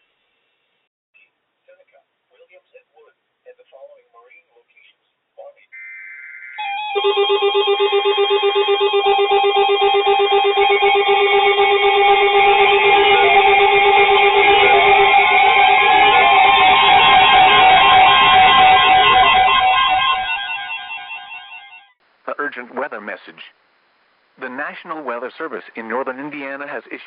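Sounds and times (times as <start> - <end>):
rising electronic tone: 6.4 - 21.9
weather alert radio beeps: 6.6 - 21.6.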